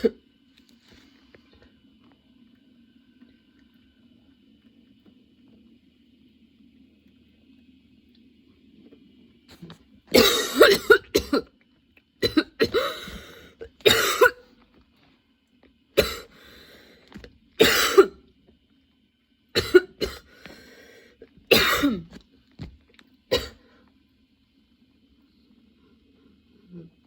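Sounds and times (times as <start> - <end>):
woman coughing: 0.0 - 0.2, 10.1 - 11.5, 12.2 - 14.4, 16.0 - 16.3, 17.6 - 18.2, 19.6 - 20.3, 21.5 - 22.2, 23.3 - 23.6.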